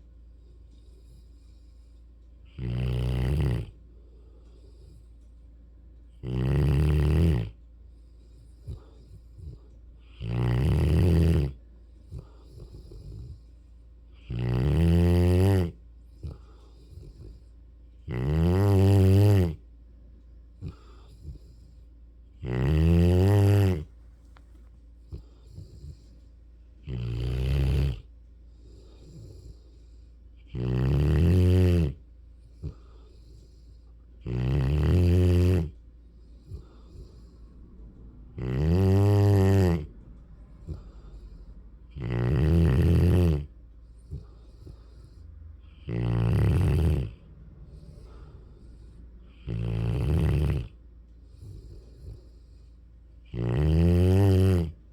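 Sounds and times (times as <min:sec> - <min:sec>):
soft breathing: 0:00.0 - 0:02.6, 0:03.6 - 0:06.2, 0:07.5 - 0:10.2, 0:11.5 - 0:14.2, 0:15.8 - 0:18.1, 0:19.6 - 0:22.4, 0:23.3 - 0:30.6, 0:31.9 - 0:34.3, 0:35.6 - 0:42.0, 0:42.9 - 0:53.4
puppy snoring: 0:00.0 - 0:05.4, 0:06.1 - 0:54.9
faint snuffles: 0:20.6 - 0:54.9.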